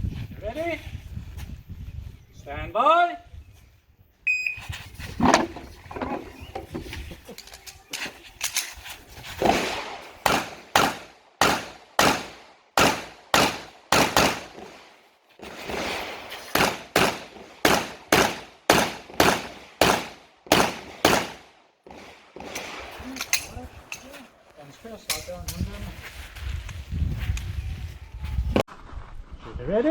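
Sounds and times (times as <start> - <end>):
pistol shots: 9.4 - 14.8, 15.6 - 22.9.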